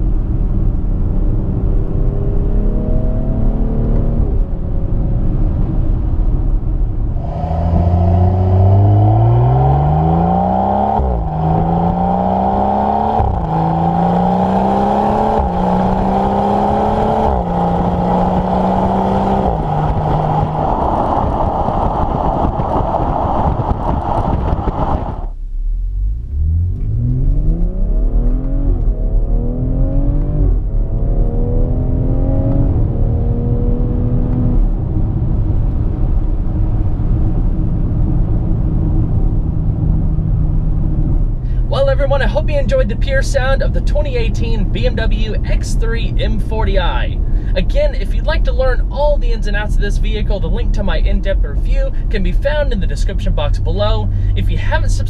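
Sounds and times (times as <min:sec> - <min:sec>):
car engine accelerating hard: 0:01.0 - 0:06.3, 0:07.0 - 0:49.4.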